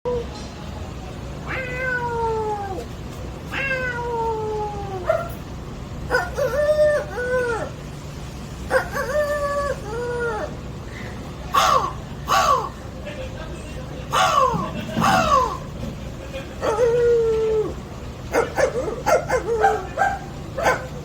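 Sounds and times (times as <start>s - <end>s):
man imitating cat meows: 1.4s - 2.9s, 3.5s - 5.1s.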